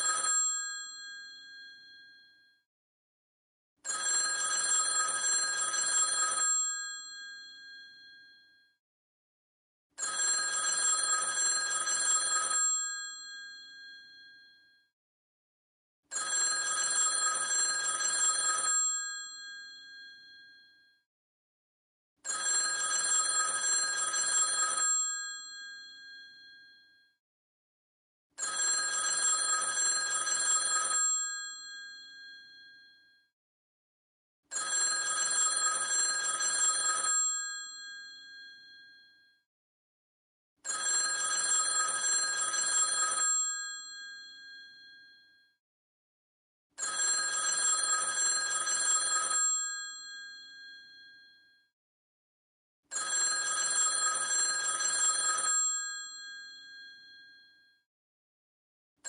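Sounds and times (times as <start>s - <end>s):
telephone bell ringing: 0.0s - 2.4s, 3.8s - 8.6s, 10.0s - 14.6s, 16.1s - 20.8s, 22.2s - 27.0s, 28.4s - 33.2s, 34.5s - 39.2s, 40.6s - 45.4s, 46.8s - 51.5s, 52.9s - 57.6s.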